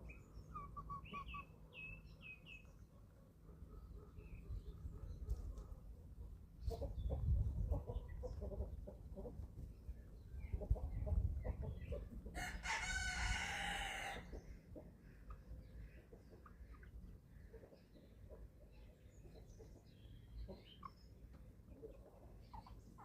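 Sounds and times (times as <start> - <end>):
chickens clucking softly: 0.0 - 23.0
young cockerel crowing: 12.4 - 14.3.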